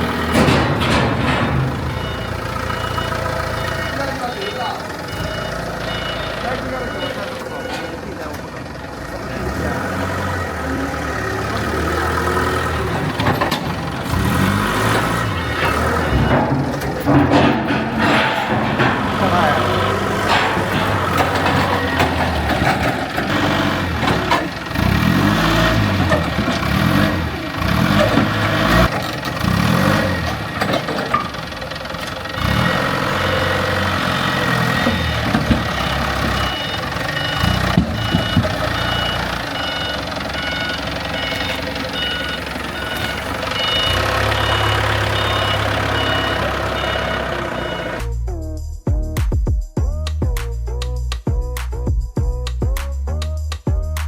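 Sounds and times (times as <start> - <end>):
reversing alarm beeping: 0.0 - 8.6, 11.1 - 24.5, 32.4 - 48.0
diesel engine revving: 0.0 - 48.3.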